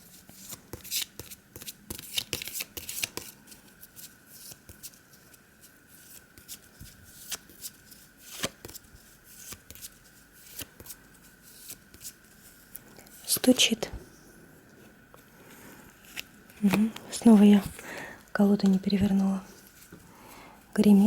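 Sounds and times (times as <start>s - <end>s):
cards being shuffled: 0.3s - 13.4s, 15.9s - 18.0s.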